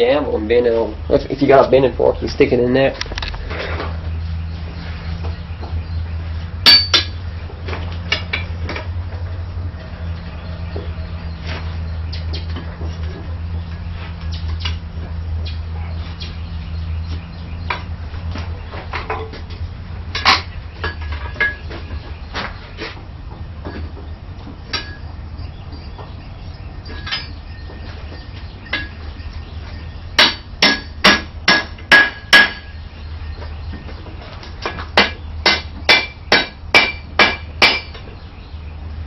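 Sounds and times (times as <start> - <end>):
hammer striking steel on anvil: 6.6 - 7.2, 24.7 - 25.0, 30.2 - 32.7, 34.6 - 38.0.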